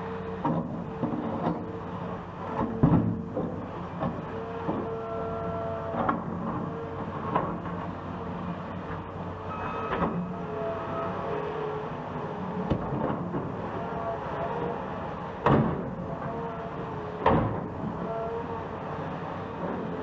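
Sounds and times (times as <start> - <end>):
heavy construction machinery running: 0.0 - 20.0
squealing metal tones: 9.5 - 11.3.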